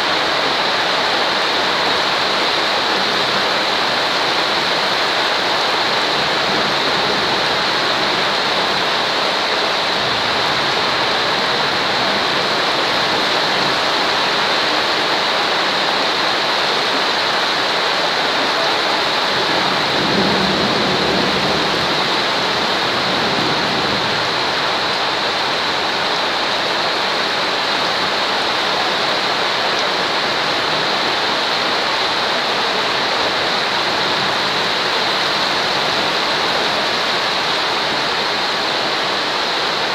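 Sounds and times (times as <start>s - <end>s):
rain hiss: 0.0s - 39.9s.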